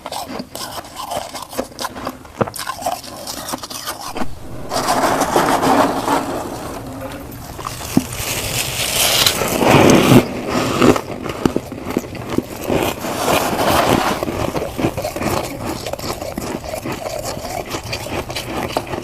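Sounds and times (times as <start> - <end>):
frost being crunched and chewed: 0.0 - 4.2, 10.8 - 19.0.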